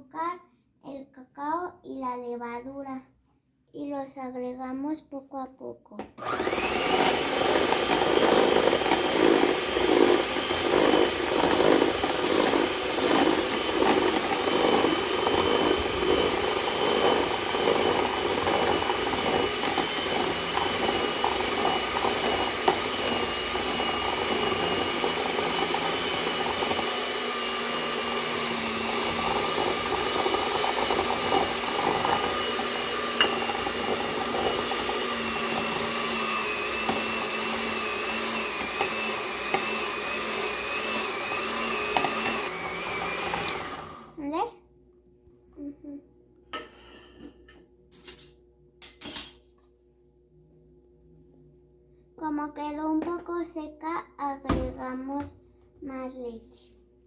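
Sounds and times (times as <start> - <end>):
electric mixer motor whine: 6.2 - 44.2.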